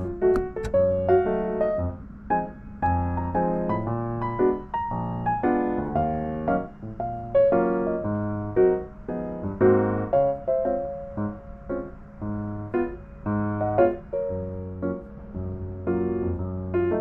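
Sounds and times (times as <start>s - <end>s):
light electric piano tune: 0.0s - 17.0s.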